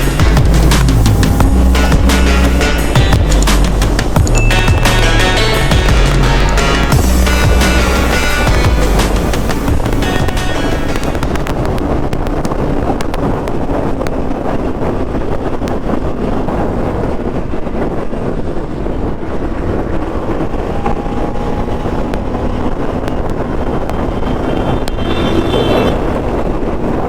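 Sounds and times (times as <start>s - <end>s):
motorcycle engine running hard: 0.0s - 15.0s
wind buffeting microphone: 0.0s - 27.0s.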